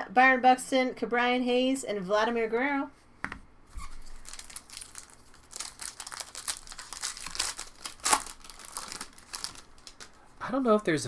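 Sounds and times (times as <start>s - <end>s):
foil wrapper crinkling and tearing: 4.0s - 10.2s.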